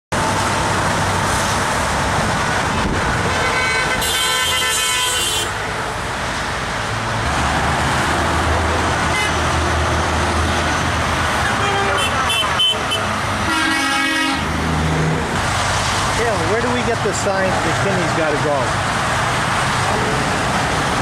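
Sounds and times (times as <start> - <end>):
heavy highway traffic: 0.1 - 21.0
vehicle horn honking: 3.4 - 5.6, 9.1 - 9.4, 11.4 - 14.5.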